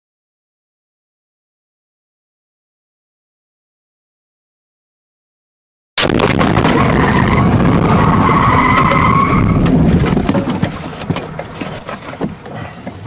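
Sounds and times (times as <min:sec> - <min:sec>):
car crash: 0:06.0 - 0:12.4
clicks and rattles: 0:06.2 - 0:13.0
tyres skidding with a squeal: 0:06.6 - 0:13.0.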